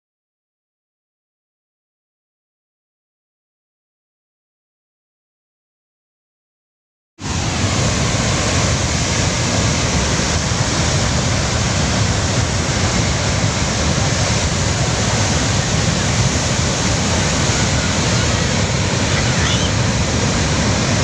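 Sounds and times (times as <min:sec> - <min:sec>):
river rushing: 0:07.2 - 0:21.0.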